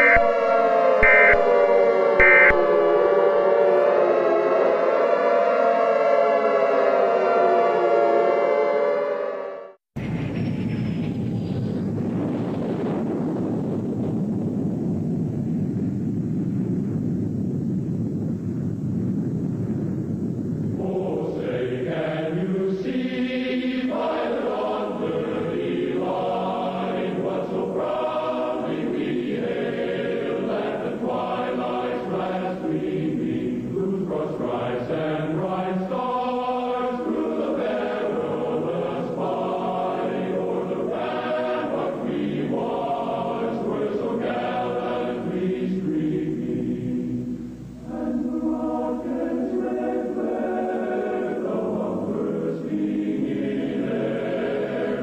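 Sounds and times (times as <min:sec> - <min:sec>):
choir singing: 0:00.0 - 0:09.8, 0:20.8 - 0:55.0.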